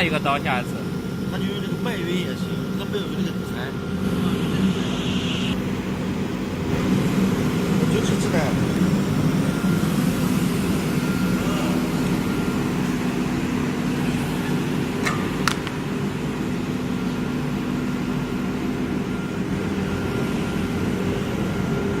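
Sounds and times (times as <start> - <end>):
cnc router humming: 0.0 - 22.0.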